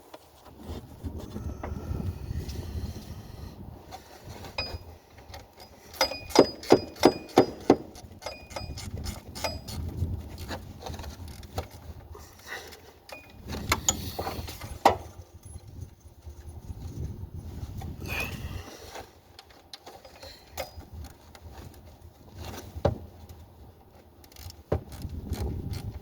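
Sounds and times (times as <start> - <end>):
wrench clinking on metal bolts: 5.5 - 10.0.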